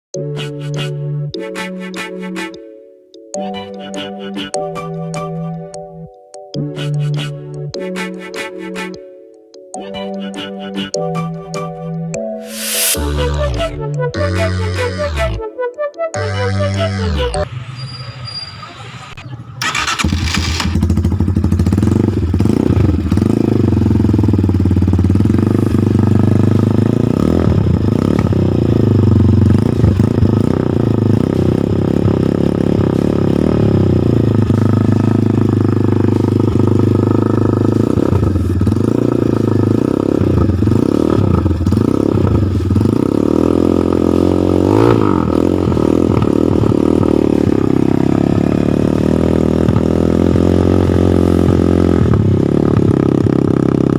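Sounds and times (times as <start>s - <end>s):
motorcycle idling: 19.6s - 53.9s.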